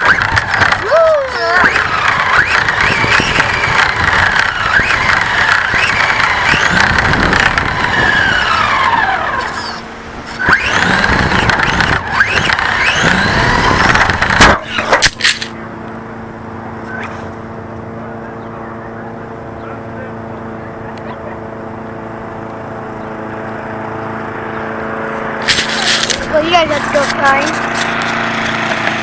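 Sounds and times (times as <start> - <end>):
toy car motor whining: 0.0 - 15.5
tyres on gravel: 0.0 - 29.0.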